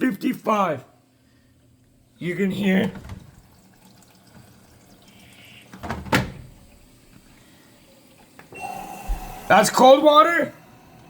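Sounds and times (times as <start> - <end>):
water trickling into washer: 2.6 - 7.0.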